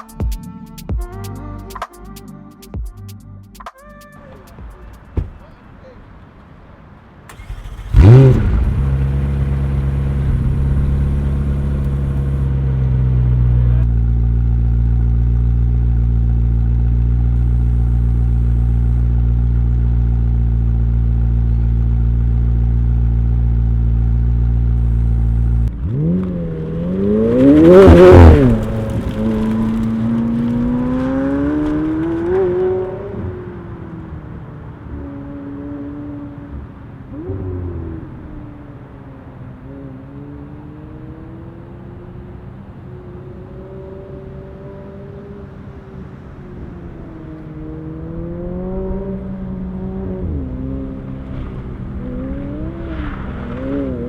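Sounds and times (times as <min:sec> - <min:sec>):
car driving off: 0:04.2 - 0:54.0
car engine starting: 0:07.0 - 0:54.0
car engine idling: 0:07.3 - 0:30.1
car engine revving: 0:07.3 - 0:54.0.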